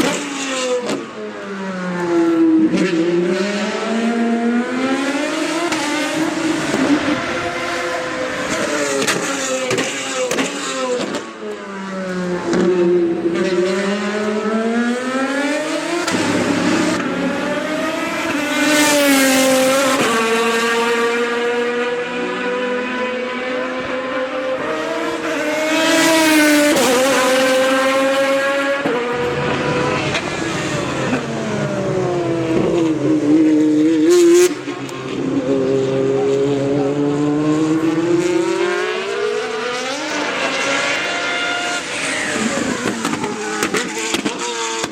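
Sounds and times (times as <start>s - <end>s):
race car engine shifting gears: 4.8s - 11.3s, 12.0s - 20.8s, 24.6s - 44.9s.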